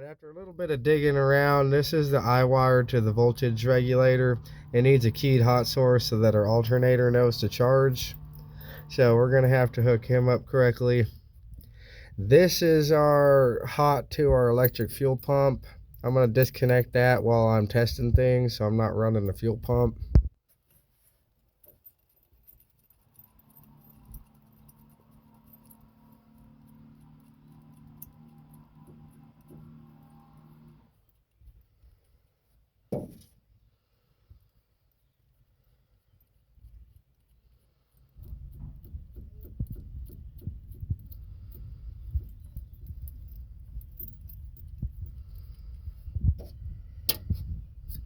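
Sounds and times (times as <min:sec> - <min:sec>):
low handling rumble: 0:00.4 - 0:11.7, 0:38.2 - 0:48.0
quiet steady hum: 0:00.4 - 0:20.2, 0:33.8 - 0:48.0
keys jingling: 0:01.0 - 0:11.8, 0:14.5 - 0:17.6, 0:20.8 - 0:31.3, 0:37.2 - 0:46.5.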